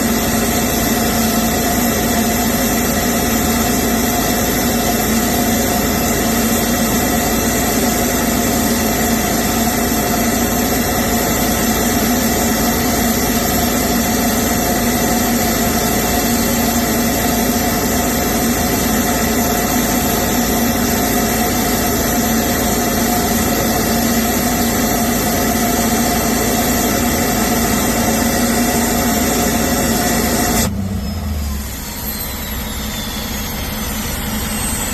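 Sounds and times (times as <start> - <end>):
diesel engine idling: 0.0 - 34.9
turbo whistle: 30.7 - 34.9.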